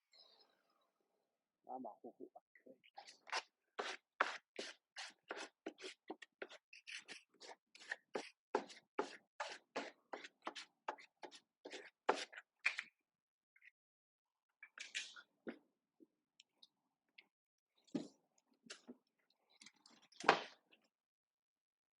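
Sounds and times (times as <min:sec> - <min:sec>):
hand tool scraping wood: 0:03.8 - 0:12.4.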